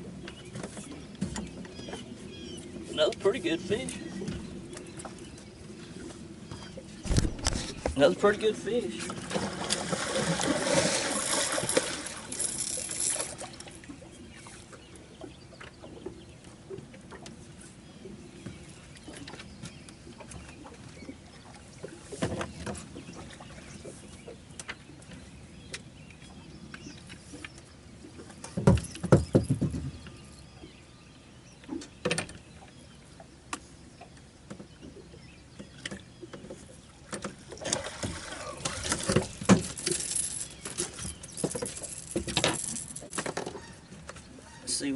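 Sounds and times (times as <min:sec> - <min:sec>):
knocks and thumps in a boat: 0:00.0 - 0:30.9, 0:31.6 - 0:44.7
splashing: 0:09.0 - 0:14.0, 0:37.5 - 0:43.2.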